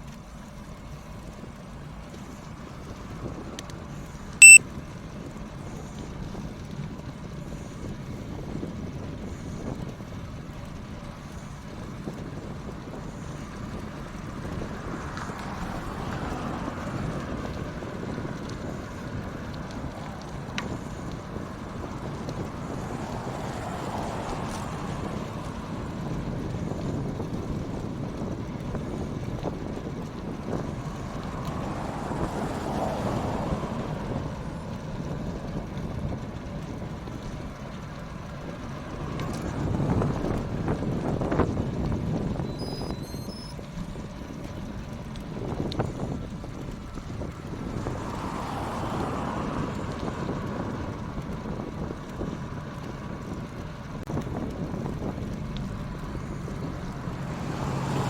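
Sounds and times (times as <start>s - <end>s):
wind rushing over microphone: 11.8s - 37.5s, 38.3s - 43.6s, 44.2s - 58.0s.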